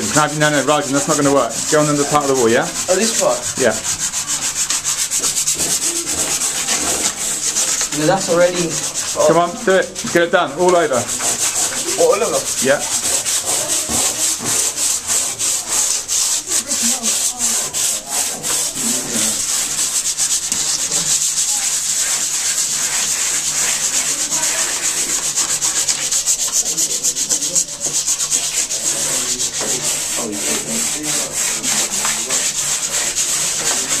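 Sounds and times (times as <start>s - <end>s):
sandpaper rubbing on wall: 0.0s - 34.0s.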